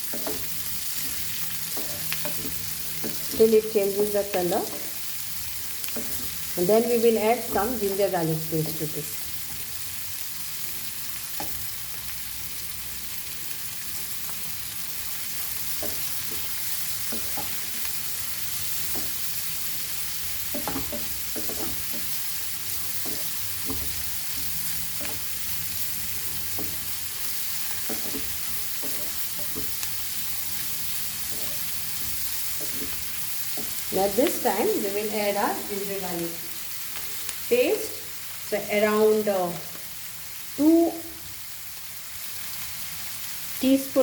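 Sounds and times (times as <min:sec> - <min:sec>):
spatula scraping a pan: 0:00.0 - 0:03.4, 0:15.5 - 0:33.9
onions sizzling in hot oil: 0:00.0 - 0:44.0.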